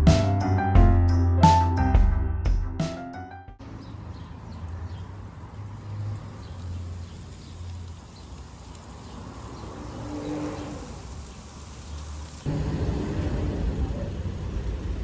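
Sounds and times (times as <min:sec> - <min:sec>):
low rumble of traffic: 0:03.6 - 0:15.0.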